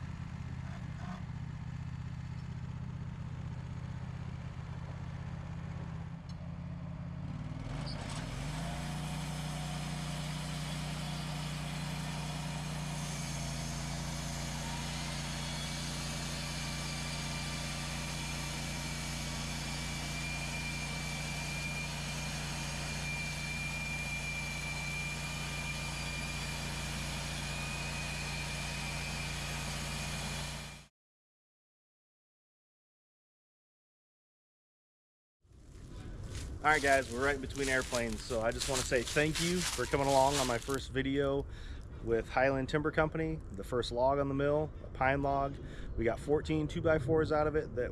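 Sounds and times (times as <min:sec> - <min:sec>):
gas engine running: 0:00.0 - 0:30.9, 0:35.5 - 0:42.4.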